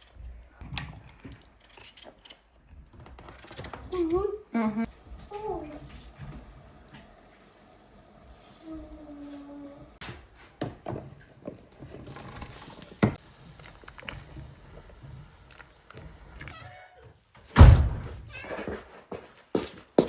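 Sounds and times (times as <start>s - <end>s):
loud thump: 17.6s - 18.3s.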